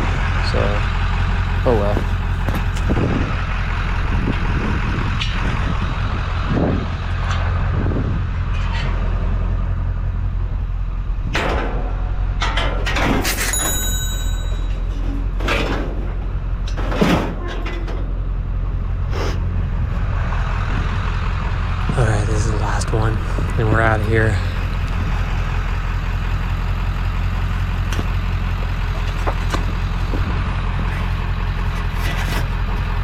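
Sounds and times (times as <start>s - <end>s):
pickup truck engine idling: 0.0s - 7.9s, 14.3s - 33.0s
scrap metal clanking: 11.4s - 18.1s, 27.9s - 33.0s.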